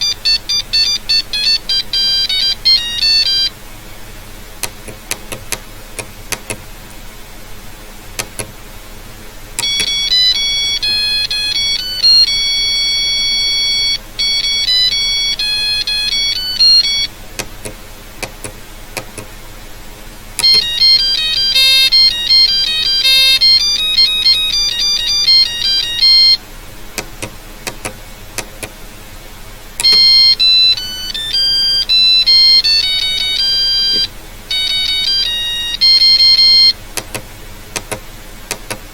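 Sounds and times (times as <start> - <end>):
beeping ringtone melodies: 0.0 - 3.6, 9.6 - 17.7, 20.4 - 26.4, 29.8 - 36.8
faint clicks: 37.0 - 38.8.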